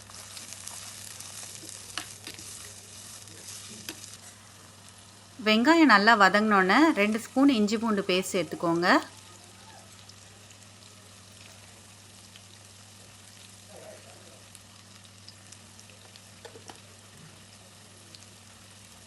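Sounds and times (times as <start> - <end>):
food sizzling in oil: 0.0 - 19.0
low steady hum: 3.8 - 13.7.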